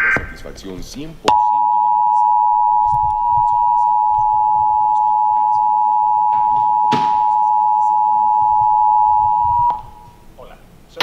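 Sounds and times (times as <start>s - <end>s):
two-tone alert signal: 1.3s - 10.1s.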